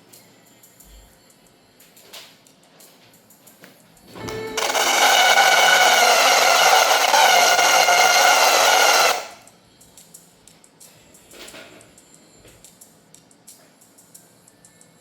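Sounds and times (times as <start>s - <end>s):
laptop speaker buzzing: 4.3s - 9.4s.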